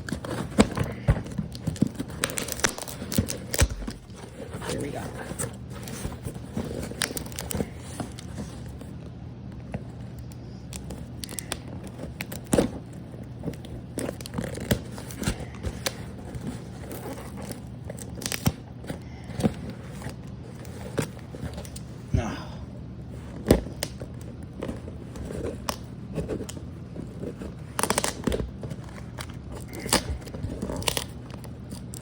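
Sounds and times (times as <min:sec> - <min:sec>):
paper and plastic rustling: 0:00.0 - 0:09.0.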